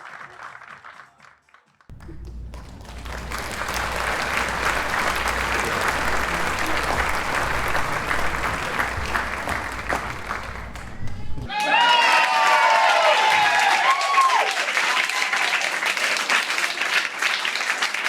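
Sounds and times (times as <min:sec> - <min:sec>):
crowd applauding: 0:01.9 - 0:18.0.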